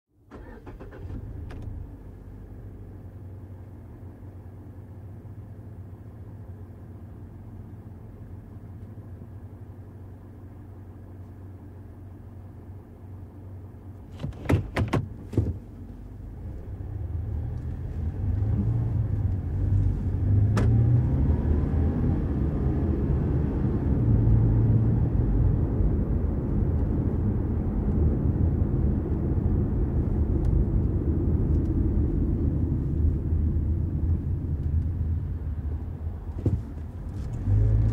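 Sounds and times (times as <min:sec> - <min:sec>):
car engine starting and idling: 0:00.1 - 0:37.9
car accelerating with road noise: 0:15.4 - 0:37.9.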